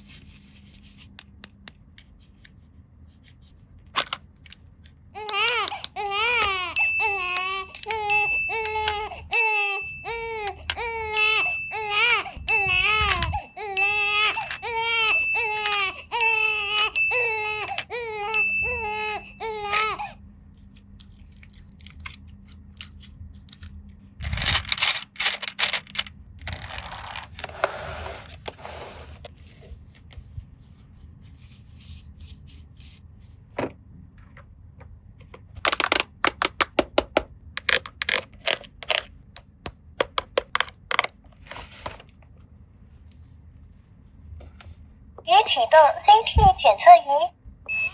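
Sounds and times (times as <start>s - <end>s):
plastic toys clicking and rustling: 3.9s - 6.6s, 7.2s - 9.1s, 13.9s - 16.8s, 21.0s - 27.6s, 35.6s - 41.4s
baby crying: 5.2s - 20.2s.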